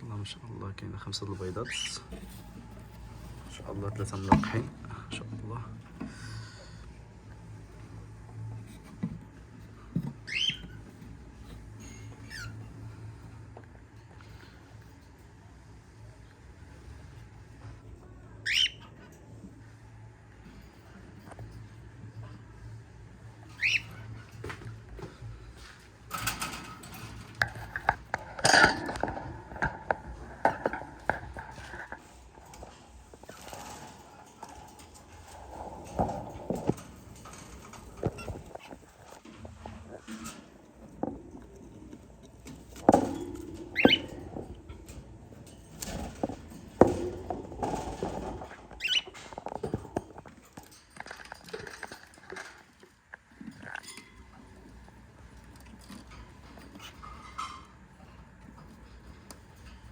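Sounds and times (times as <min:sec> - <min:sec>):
cockatiel chirp: 0:18.5 - 0:18.8, 0:23.6 - 0:23.9
objects clicking and clattering: 0:24.4 - 0:59.9.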